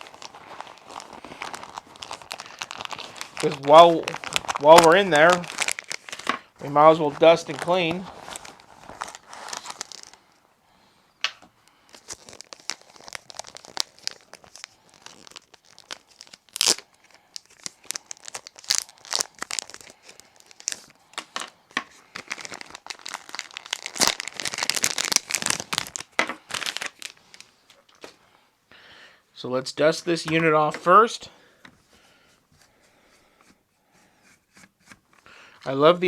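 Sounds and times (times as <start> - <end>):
hands rummaging in a bag: 0.0 - 10.2.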